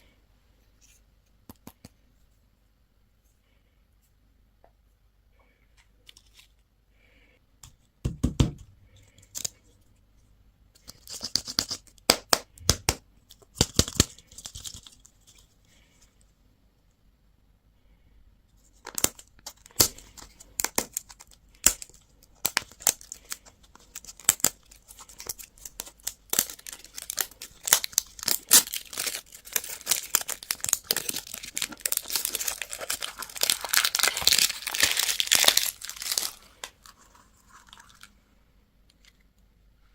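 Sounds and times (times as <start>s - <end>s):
candy wrapper crinkling: 13.3s - 15.5s, 18.8s - 38.2s.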